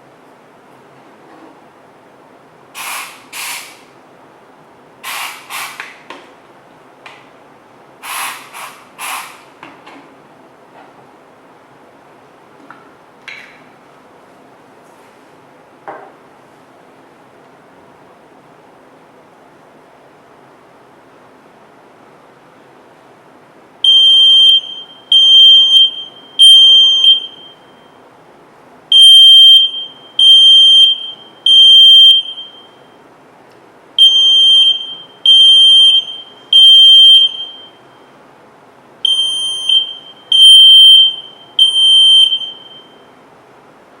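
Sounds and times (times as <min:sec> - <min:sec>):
fire alarm beeping: 0:23.8 - 0:28.1, 0:28.9 - 0:33.0, 0:34.0 - 0:38.2, 0:39.0 - 0:43.2.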